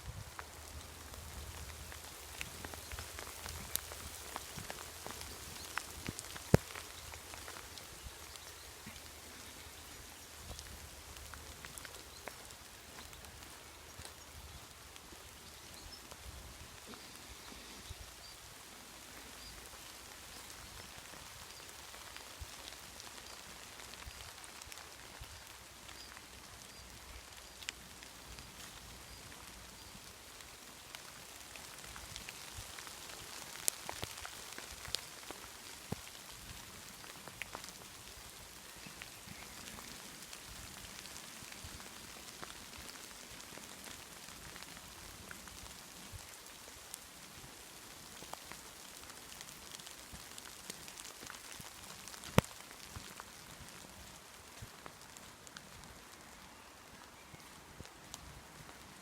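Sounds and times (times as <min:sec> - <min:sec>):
light rain patter: 0:00.0 - 0:59.0
sharp raindrop ticks: 0:00.3 - 0:18.4, 0:19.1 - 0:59.0.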